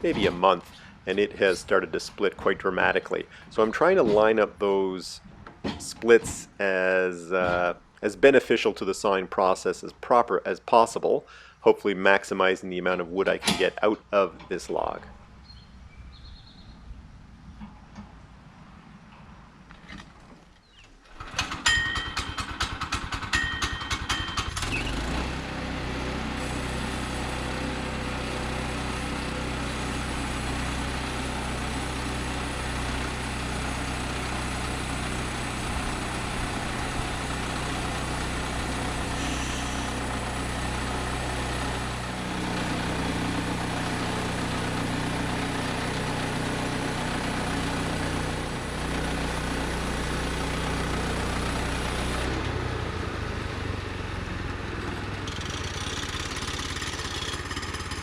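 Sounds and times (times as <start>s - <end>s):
small gasoline engine running: 21.1s - 58.0s.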